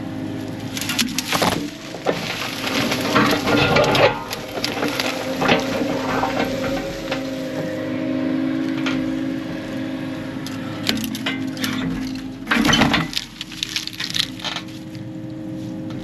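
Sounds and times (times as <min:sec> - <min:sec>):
diesel engine running under load: 0:00.0 - 0:16.0
brush and wood breaking: 0:00.6 - 0:07.8, 0:10.4 - 0:15.0.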